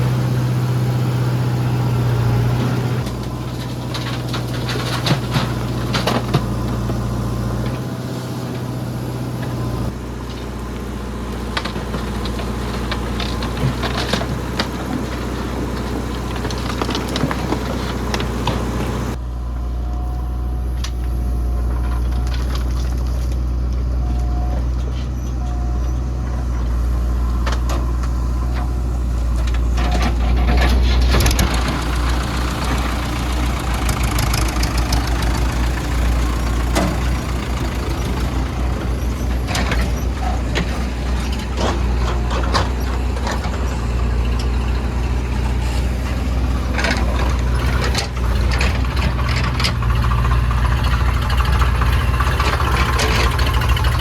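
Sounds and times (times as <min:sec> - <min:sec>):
heavy diesel engine under load: 0:00.0 - 0:54.0.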